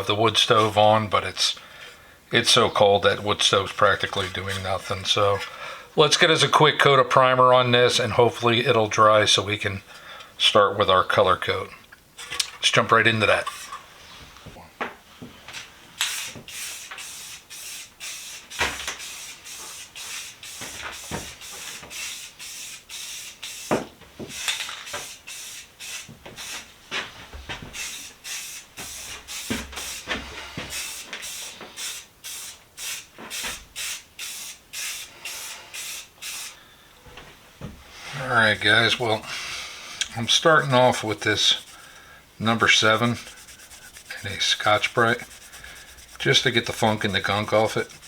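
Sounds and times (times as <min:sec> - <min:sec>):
spray can hissing: 0:16.0 - 0:26.7, 0:27.7 - 0:30.1, 0:30.7 - 0:36.6, 0:38.2 - 0:39.2, 0:40.0 - 0:48.0.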